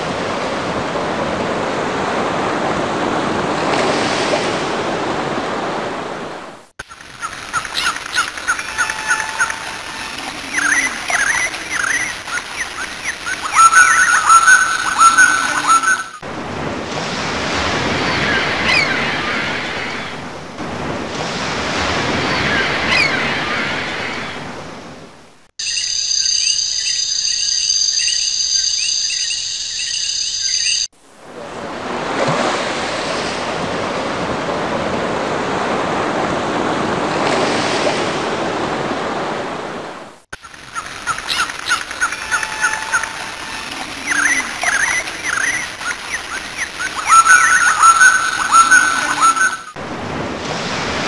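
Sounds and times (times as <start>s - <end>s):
ocean waves washing in: 0.0s - 25.5s, 30.9s - 51.0s.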